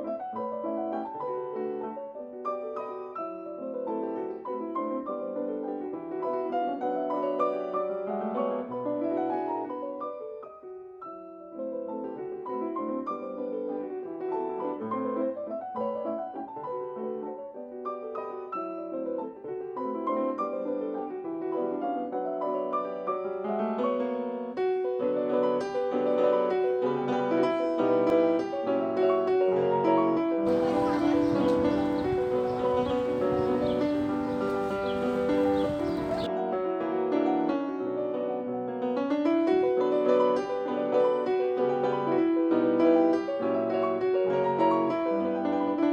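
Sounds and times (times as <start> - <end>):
outdoor ambience hiss: 30.5 - 36.3
solo piano melody: 30.5 - 36.3.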